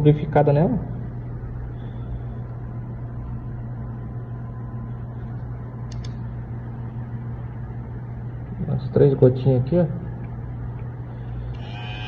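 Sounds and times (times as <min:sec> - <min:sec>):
hair clipper humming: 0:11.5 - 0:12.0.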